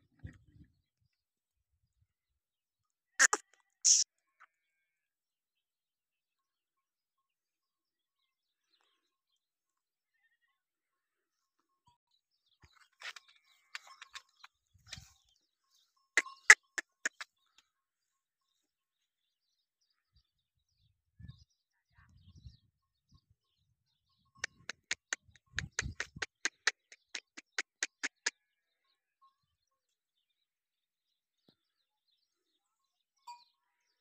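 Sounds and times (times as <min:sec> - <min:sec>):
sharp clicks: 0:24.5 - 0:28.3.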